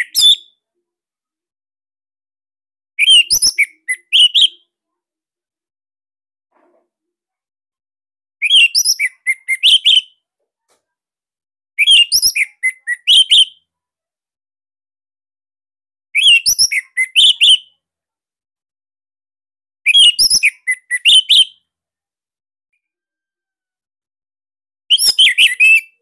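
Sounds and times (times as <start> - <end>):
thrush singing whistled phrases: 3.0 - 4.6, 8.4 - 10.2, 11.8 - 13.6, 16.2 - 17.7, 19.9 - 21.6, 24.9 - 26.0.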